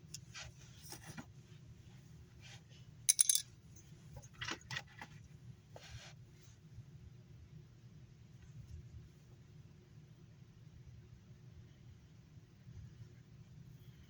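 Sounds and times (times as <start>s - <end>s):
metallic clinks: 3.1s - 3.4s.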